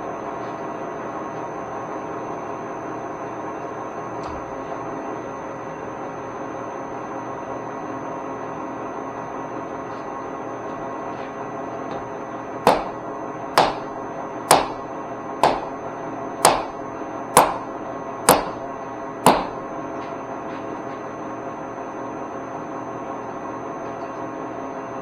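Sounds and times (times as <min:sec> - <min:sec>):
sharp mallet strikes: 0:12.7 - 0:13.0, 0:13.6 - 0:13.9, 0:14.5 - 0:14.8, 0:15.4 - 0:15.8, 0:16.4 - 0:16.8, 0:17.4 - 0:17.7, 0:18.3 - 0:18.6, 0:19.3 - 0:19.6.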